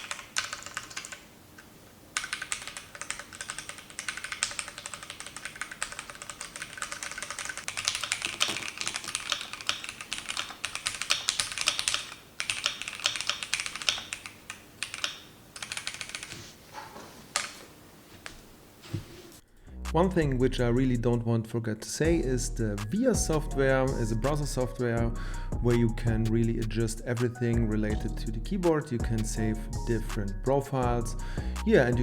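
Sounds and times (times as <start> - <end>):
typing on mechanical keyboard: 0.0 - 1.3, 2.2 - 16.4.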